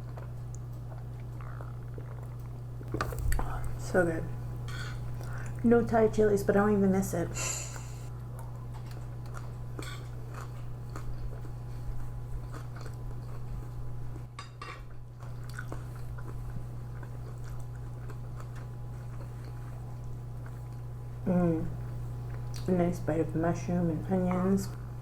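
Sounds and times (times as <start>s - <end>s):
chewing and biting: 0.0s - 3.8s, 8.3s - 21.0s
steady low hum: 0.0s - 25.0s.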